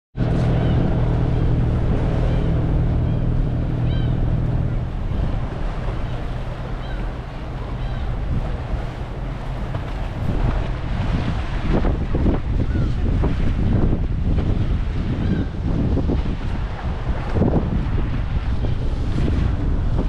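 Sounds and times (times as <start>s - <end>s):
seagulls calling: 0.2s - 10.3s, 15.1s - 15.6s
boat engine droning: 0.2s - 20.0s
water noise: 0.2s - 20.0s
wind: 0.2s - 20.0s.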